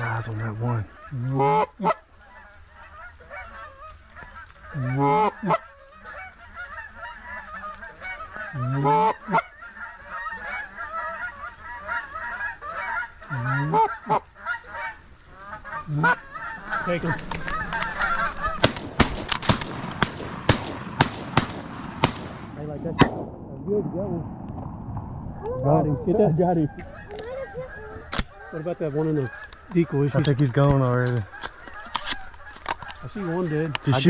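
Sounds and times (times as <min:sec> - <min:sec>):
loud single goose honks: 0:00.0 - 0:18.8
flock of geese honking: 0:00.0 - 0:21.7, 0:25.9 - 0:34.0.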